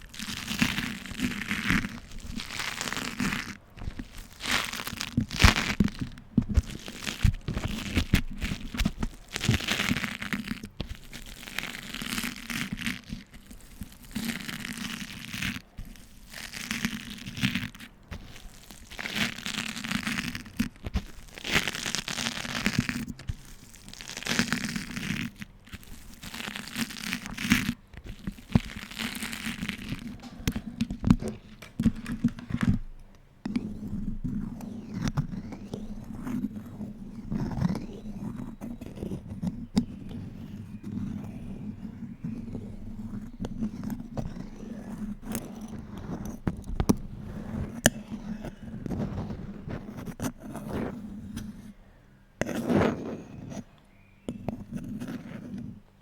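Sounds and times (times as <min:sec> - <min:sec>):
wax wrap crinkling and crackling: 0:00.0 - 0:51.8.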